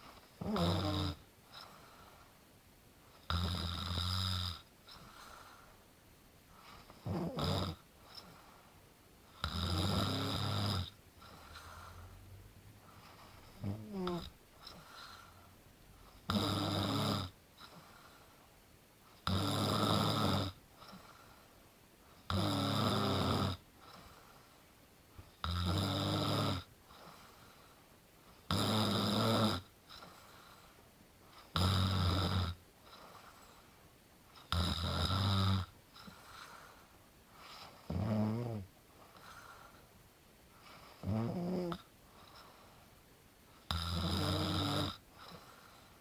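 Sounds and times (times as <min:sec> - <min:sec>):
rumbling snores: 0:00.4 - 0:01.2, 0:07.0 - 0:07.8, 0:09.4 - 0:12.3, 0:13.3 - 0:14.4, 0:16.3 - 0:17.4, 0:19.2 - 0:20.6, 0:22.3 - 0:23.6, 0:25.4 - 0:26.7, 0:28.5 - 0:29.7, 0:34.5 - 0:35.7, 0:37.7 - 0:38.7, 0:40.9 - 0:41.9, 0:43.7 - 0:45.0
faint breathing: 0:01.4 - 0:02.4, 0:04.8 - 0:07.0, 0:11.2 - 0:16.3, 0:17.6 - 0:18.5, 0:20.7 - 0:22.2, 0:23.8 - 0:24.8, 0:26.8 - 0:28.0, 0:29.8 - 0:31.6, 0:35.9 - 0:37.9, 0:38.9 - 0:41.1, 0:42.0 - 0:43.0, 0:45.0 - 0:46.0.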